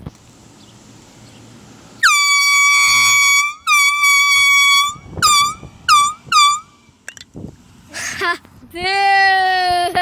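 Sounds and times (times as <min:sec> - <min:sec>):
air horn blasts: 0:02.0 - 0:06.9.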